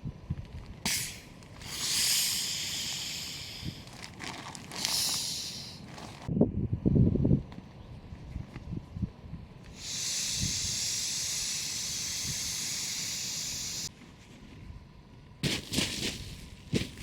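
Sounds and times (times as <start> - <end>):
high-pitched hiss: 0.9 - 3.9, 4.8 - 5.9, 9.7 - 13.9.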